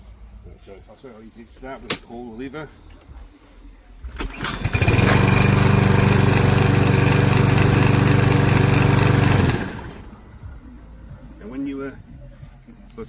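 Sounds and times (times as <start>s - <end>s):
starter cord pulled: 4.2s - 10.1s
mower engine running: 4.2s - 10.2s.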